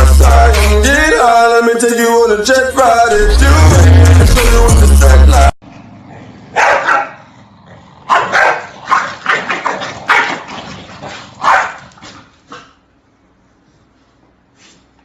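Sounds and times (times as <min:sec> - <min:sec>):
dog barking: 0:06.5 - 0:07.2, 0:08.1 - 0:10.5, 0:11.1 - 0:11.9.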